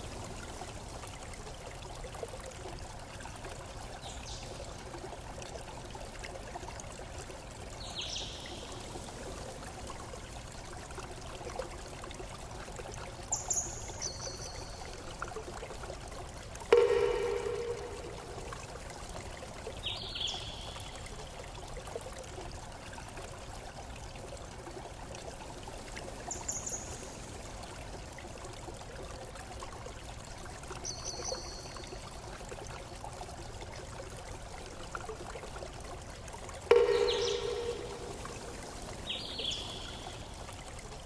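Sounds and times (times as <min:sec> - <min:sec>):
running water: 0:00.0 - 0:41.0
high bird calls: 0:36.7 - 0:40.2.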